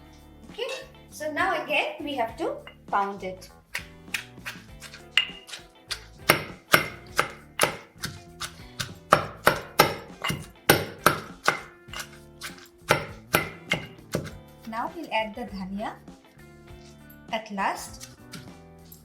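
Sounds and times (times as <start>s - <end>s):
background music: 0.0s - 19.0s
pestle pounding in mortar: 3.7s - 14.4s.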